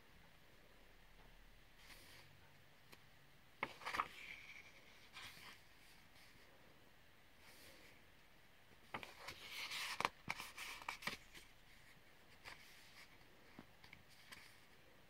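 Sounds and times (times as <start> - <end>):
paper rustling: 3.6 - 6.4, 8.9 - 14.8.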